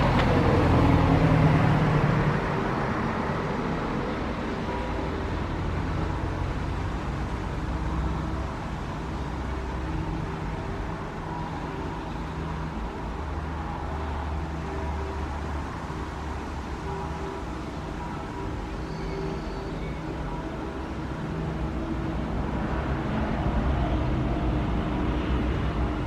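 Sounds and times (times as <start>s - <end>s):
steady rushing noise: 0.0s - 26.0s.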